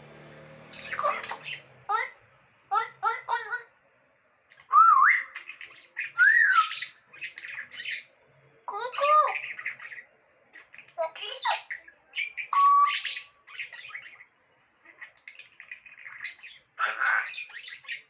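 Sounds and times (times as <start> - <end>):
parrot squawking: 0.7 - 3.8, 4.5 - 18.0
parrot whistling: 4.6 - 8.1, 10.6 - 14.3.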